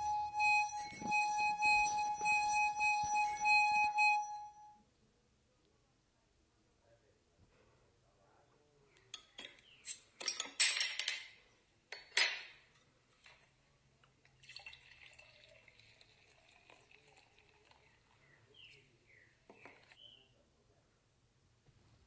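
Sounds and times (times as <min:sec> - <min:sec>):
glass clinks: 0:00.0 - 0:04.6
liquid pouring into glass: 0:14.3 - 0:18.2.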